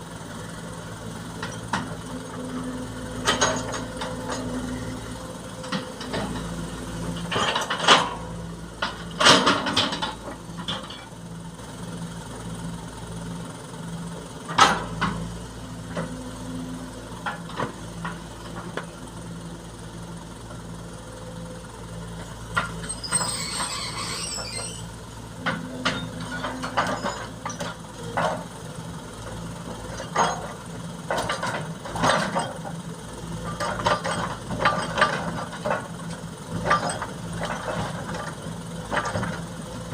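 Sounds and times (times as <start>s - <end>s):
heavy diesel engine running: 0.0s - 39.9s
sharp metal clanks and knocks: 3.2s - 4.5s, 25.4s - 28.4s, 29.9s - 32.7s.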